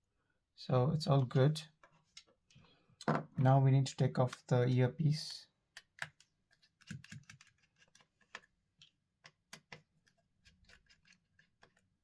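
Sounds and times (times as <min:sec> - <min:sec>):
small clicks and taps of tools: 0:05.7 - 0:11.9.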